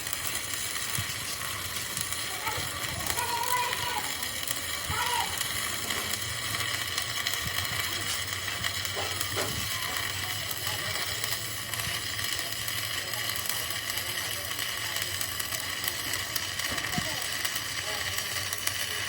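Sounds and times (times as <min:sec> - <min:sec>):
steady hissing noise: 0:00.0 - 0:19.0.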